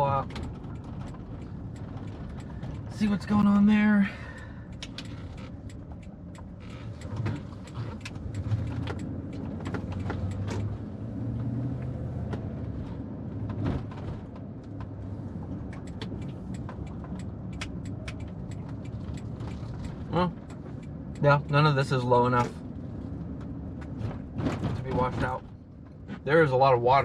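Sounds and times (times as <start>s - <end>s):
light clicks and ticks: 0.0s - 10.8s, 15.6s - 22.6s
car engine and road rumble: 0.0s - 27.0s.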